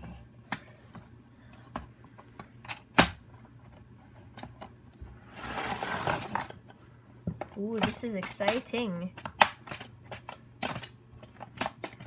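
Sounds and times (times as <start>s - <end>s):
sharp plastic snap: 7.8s - 12.0s.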